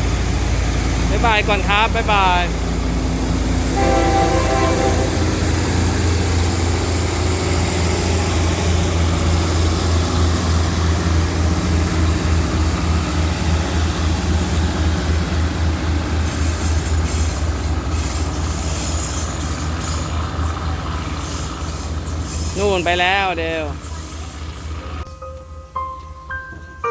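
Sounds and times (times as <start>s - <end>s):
diesel train rumbling past: 0.0s - 26.9s.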